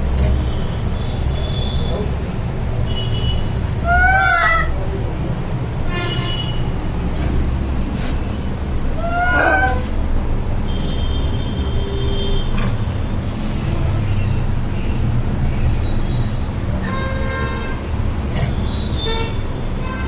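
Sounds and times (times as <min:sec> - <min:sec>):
low traffic rumble: 0:00.0 - 0:20.0
animal calls rising and falling: 0:03.8 - 0:04.8, 0:09.0 - 0:09.9.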